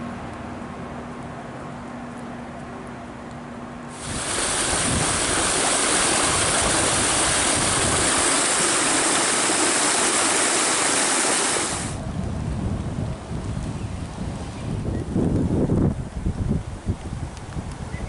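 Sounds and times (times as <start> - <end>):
floodwater rushing and splashing: 3.9 - 12.0.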